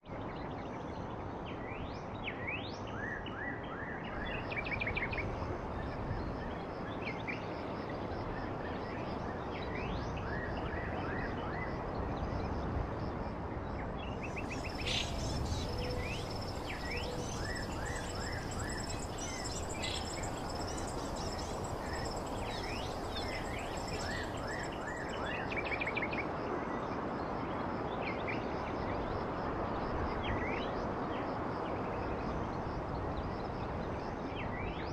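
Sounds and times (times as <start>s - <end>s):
steady rushing background noise: 14.2s - 26.0s
birds chirping and trilling: 14.3s - 25.2s
thin high steady tone: 14.4s - 25.2s.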